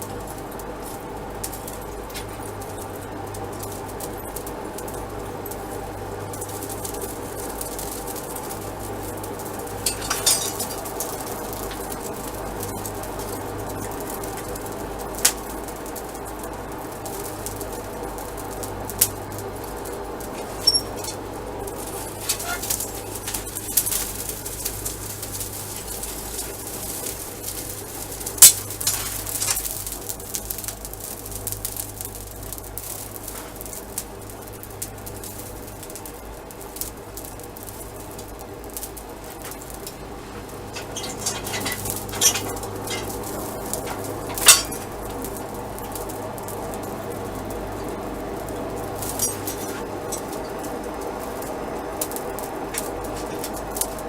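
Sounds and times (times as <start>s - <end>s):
metallic clinks and clanks: 9.8s - 11.9s, 40.7s - 45.0s, 49.0s - 50.4s.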